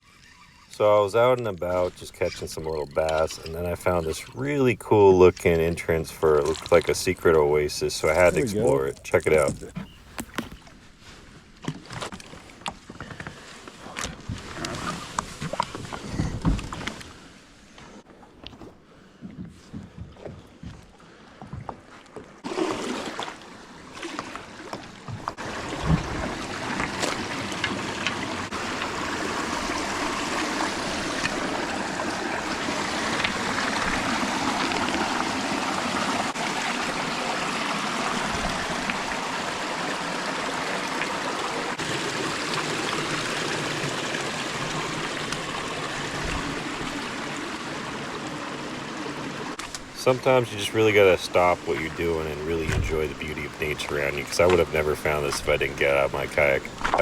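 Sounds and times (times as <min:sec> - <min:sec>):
flowing stream rushing: 0:25.3 - 0:57.0.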